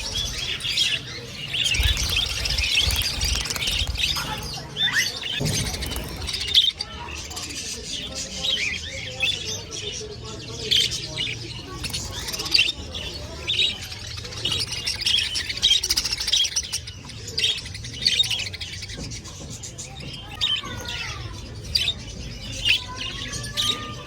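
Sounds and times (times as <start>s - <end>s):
small birds chirping: 0.0s - 24.0s.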